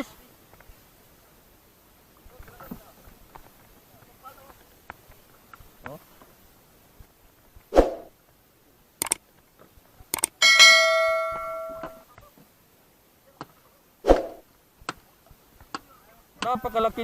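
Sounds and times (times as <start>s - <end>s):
metal object struck ringing: 10.4s - 12.0s
sharp knocks: 10.4s - 12.0s.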